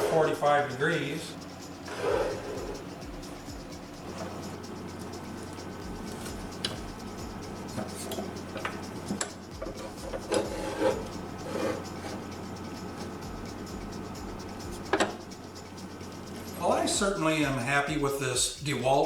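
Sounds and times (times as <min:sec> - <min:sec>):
steady low hum: 0:00.0 - 0:19.0
metal parts clicking and knocking: 0:07.7 - 0:12.3.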